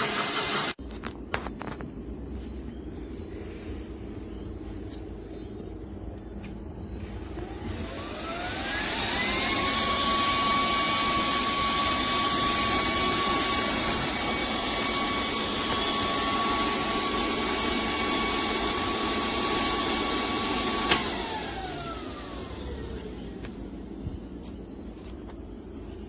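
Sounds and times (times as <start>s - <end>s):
air compressor motor whining: 0.0s - 0.8s, 6.6s - 26.0s.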